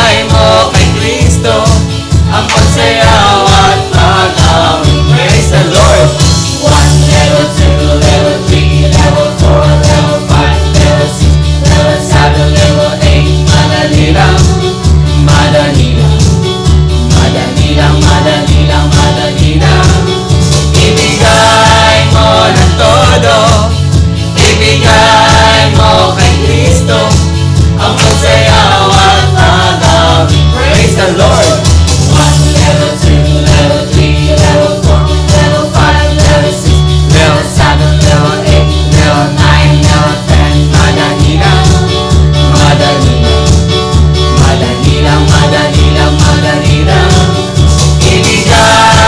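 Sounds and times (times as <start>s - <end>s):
pulsing bass beat: 0.0s - 49.0s
voices singing: 0.0s - 49.0s
worship band music: 0.0s - 49.0s.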